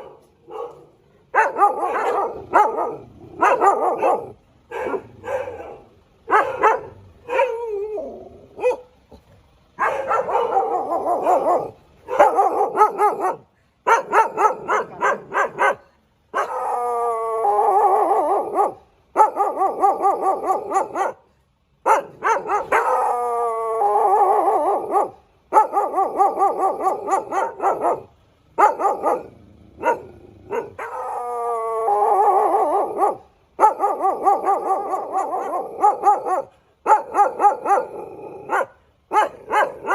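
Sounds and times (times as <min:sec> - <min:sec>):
dog barking: 0:00.0 - 0:08.0, 0:08.6 - 0:09.0, 0:09.8 - 0:16.8, 0:17.8 - 0:23.2, 0:24.1 - 0:31.2, 0:32.1 - 0:39.9
dog howling: 0:06.6 - 0:08.8, 0:10.1 - 0:13.4, 0:16.4 - 0:21.1, 0:22.4 - 0:28.1, 0:28.7 - 0:39.9.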